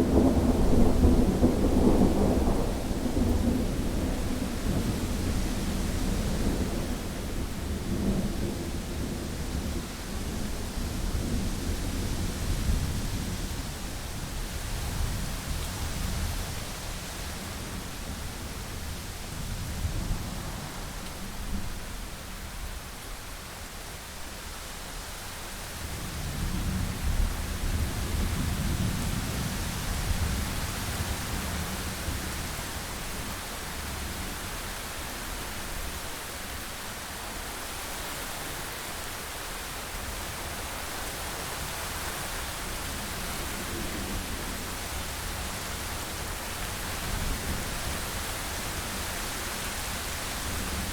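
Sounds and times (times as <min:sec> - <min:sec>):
rolling thunder: 0:00.0 - 0:13.6
steady rain: 0:00.0 - 0:50.9.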